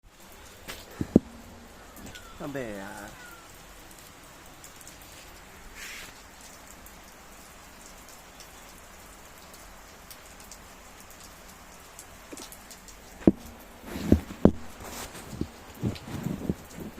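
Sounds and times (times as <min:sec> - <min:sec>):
rain drop ticks: 0:00.0 - 0:16.9
steady rain falling: 0:00.0 - 0:16.9.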